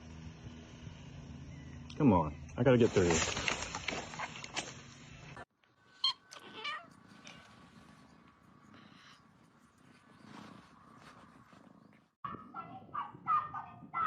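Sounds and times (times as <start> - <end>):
cat calling: 6.0 - 7.5
cat purring: 6.3 - 12.2.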